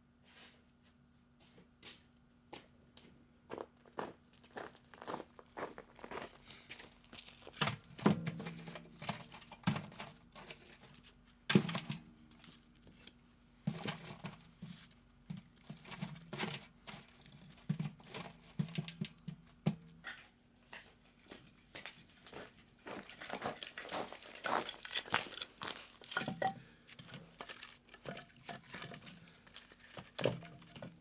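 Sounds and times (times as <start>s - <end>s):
objects being handled by hand: 24.1s - 31.0s.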